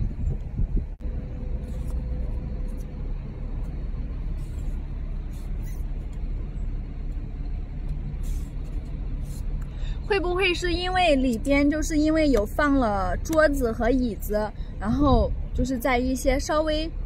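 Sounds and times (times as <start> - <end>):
low rumble of vehicle traffic: 0.0 - 17.0.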